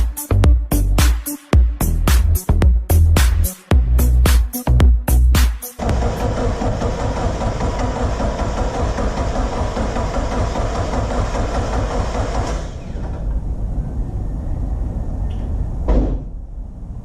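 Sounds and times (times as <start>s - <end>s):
engine deep rumble: 5.1s - 17.0s.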